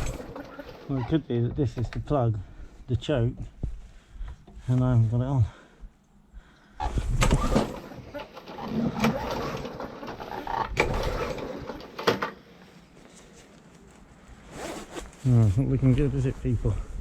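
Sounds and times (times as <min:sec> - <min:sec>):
engine turning over with rattle: 0:00.0 - 0:01.0, 0:06.8 - 0:12.3
lawn mower pull-cord starter: 0:00.0 - 0:01.0, 0:07.1 - 0:12.4.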